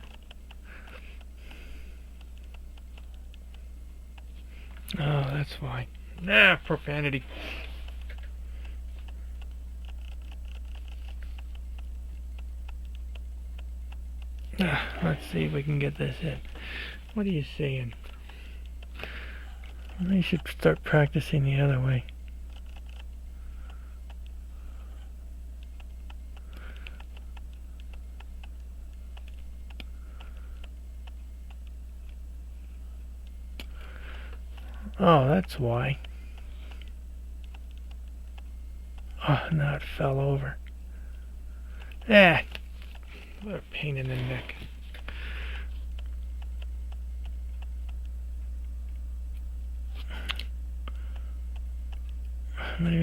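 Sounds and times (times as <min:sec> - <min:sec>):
faint regular ticking: 0:00.0 - 0:53.0
low electrical hum: 0:00.0 - 0:53.0.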